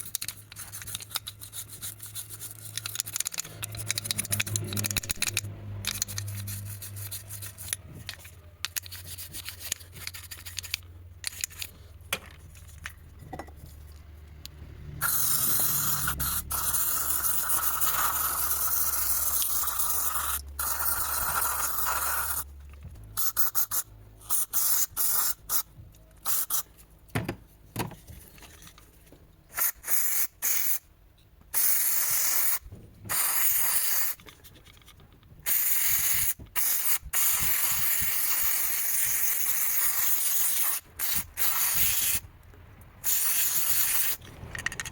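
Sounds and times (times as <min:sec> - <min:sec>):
aerosol can spraying: 0:15.0 - 0:22.5, 0:23.2 - 0:26.6, 0:29.5 - 0:30.8, 0:31.5 - 0:34.2, 0:35.4 - 0:42.2, 0:43.0 - 0:44.2
scraping and clicking: 0:34.2 - 0:35.4.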